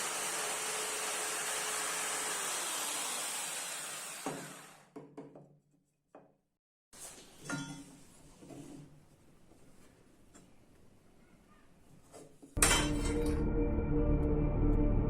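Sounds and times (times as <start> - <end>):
electric drill motor whining: 0.0 - 4.9.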